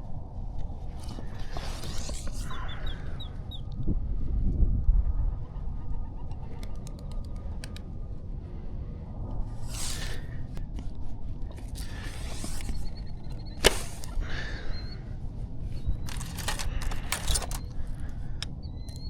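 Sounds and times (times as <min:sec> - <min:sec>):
wind buffeting microphone: 0:00.0 - 0:18.7
rustling swishes: 0:09.6 - 0:14.2.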